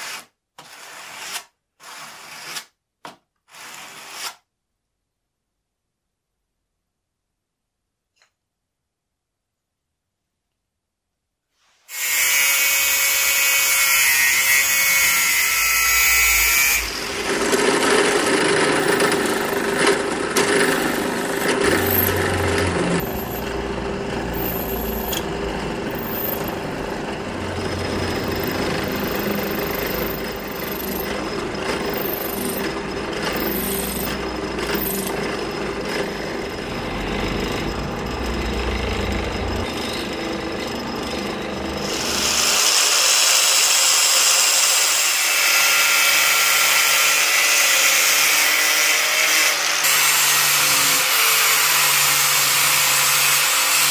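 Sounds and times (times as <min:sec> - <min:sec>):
power tool whining: 0:11.9 - 0:53.9.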